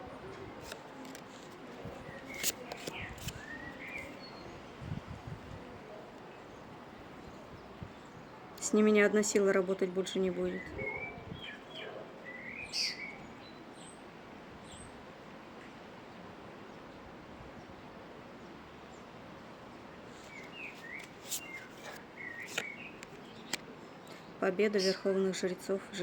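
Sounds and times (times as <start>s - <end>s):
steady background hiss: 0.0s - 26.0s
birds chirping: 0.9s - 5.0s, 6.2s - 15.0s, 18.4s - 26.0s.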